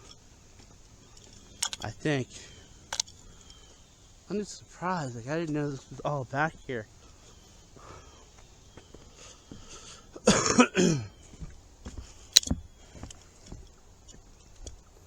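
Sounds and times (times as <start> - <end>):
faint ticks: 0.0 - 10.2, 11.2 - 15.0
sharp click: 1.2 - 1.9, 12.4 - 12.6
man coughing: 10.2 - 11.2.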